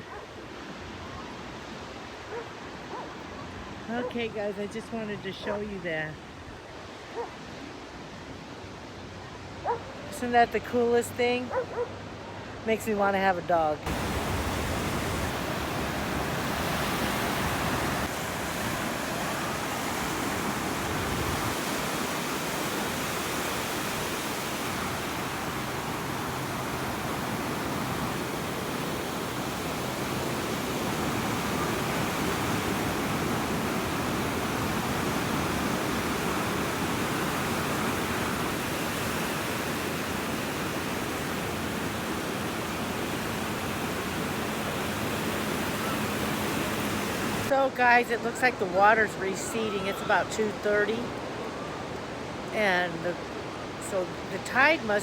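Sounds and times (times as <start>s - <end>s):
ocean waves washing up beach: 13.8s - 55.0s.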